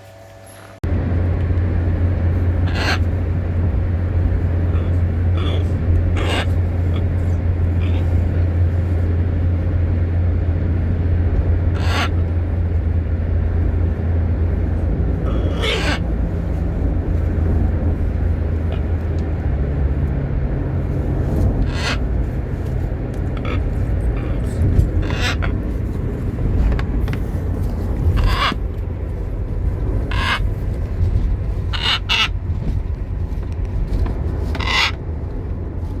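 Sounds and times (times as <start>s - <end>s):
loud low hum: 0.0s - 36.0s
parrot squawking: 2.6s - 3.2s, 4.7s - 8.2s, 11.7s - 12.2s, 15.2s - 16.2s, 21.6s - 22.1s, 23.3s - 25.6s, 28.1s - 28.6s, 30.0s - 30.5s, 31.6s - 32.4s, 34.5s - 35.0s.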